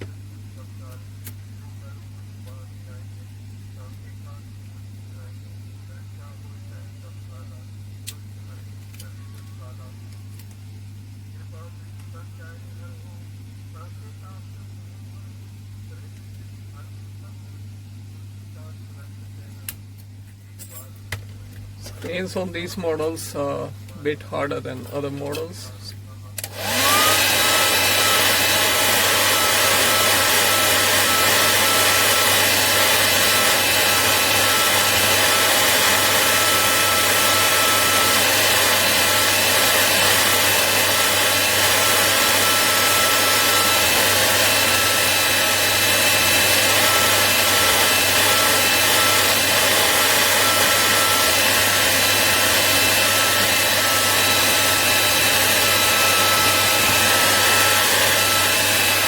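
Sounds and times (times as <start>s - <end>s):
hot-air blower whining: 0.0s - 0.2s, 21.1s - 59.0s.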